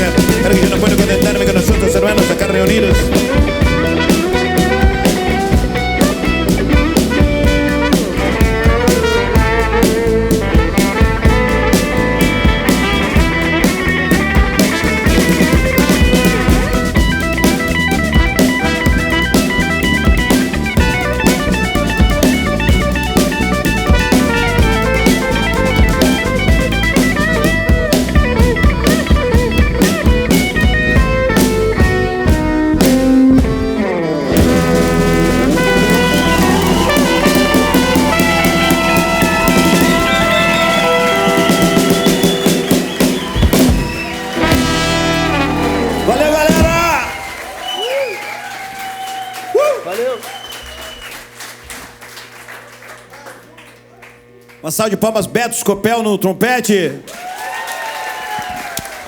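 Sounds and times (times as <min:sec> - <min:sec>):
drum kit beat: 0:00.0 - 0:49.0
rock band playing instrumental: 0:00.0 - 0:49.0
guitar: 0:00.0 - 0:51.2.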